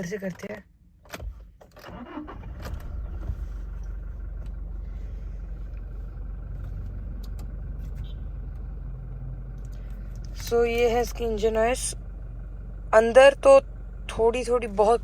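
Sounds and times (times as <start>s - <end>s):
diesel engine starting and idling: 0.1s - 15.0s.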